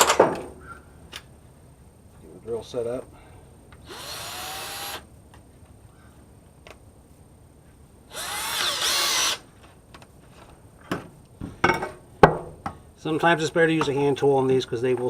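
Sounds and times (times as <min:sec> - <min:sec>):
power drill whine: 0:03.8 - 0:05.1, 0:08.1 - 0:09.4.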